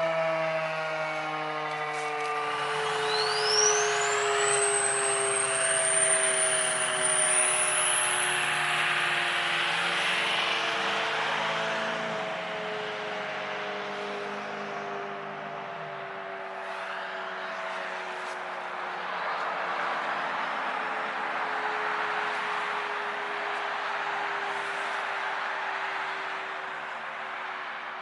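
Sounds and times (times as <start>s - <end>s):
siren winding down: 0.0s - 12.1s.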